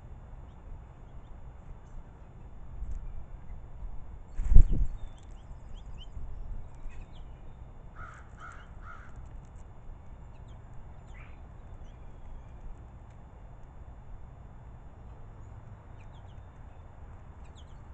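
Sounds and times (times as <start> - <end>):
harsh bird calls: 8.0 - 9.2.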